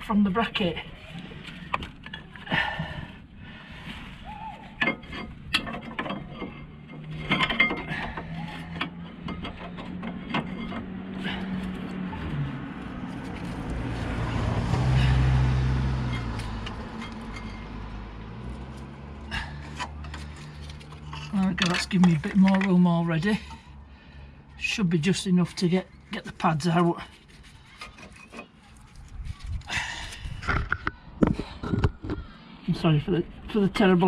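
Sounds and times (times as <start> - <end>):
hand tools tapping on metal: 4.8 - 13.8, 18.8 - 23.6
vehicle engine passing: 6.6 - 21.4.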